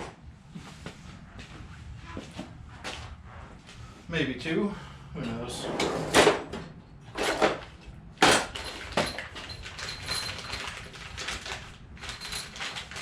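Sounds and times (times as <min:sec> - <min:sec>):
metal parts clinking: 0:08.2 - 0:13.0.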